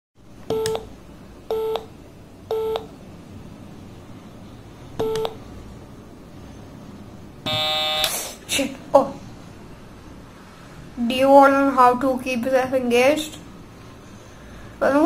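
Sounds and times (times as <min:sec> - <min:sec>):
short electronic beeps: 0:07.5 - 0:08.1.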